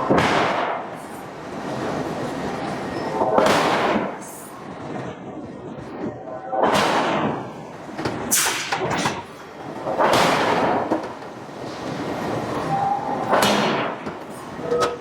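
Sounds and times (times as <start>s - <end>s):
hydraulic hammer striking steel: 0.0s - 1.0s, 6.6s - 11.1s, 13.1s - 15.0s.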